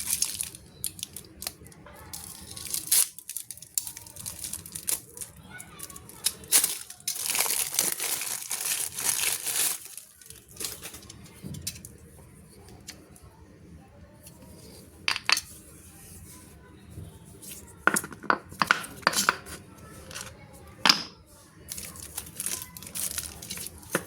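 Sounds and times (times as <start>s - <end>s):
packaging torn and crinkled: 0.0s - 11.1s, 21.8s - 24.0s.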